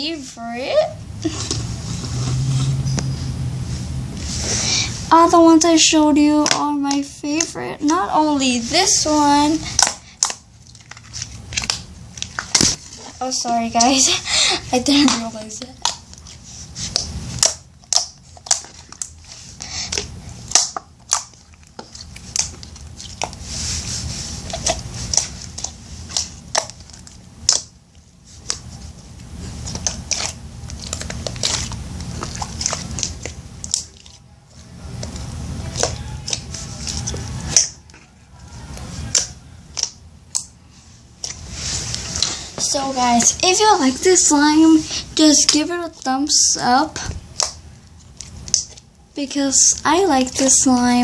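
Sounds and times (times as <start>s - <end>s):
slime squishing: 4.2s - 51.0s
slime clicking and popping: 9.7s - 12.8s, 16.9s - 19.2s, 19.9s - 23.4s, 24.5s - 27.8s, 29.6s - 34.2s, 39.1s - 40.6s, 48.2s - 48.8s.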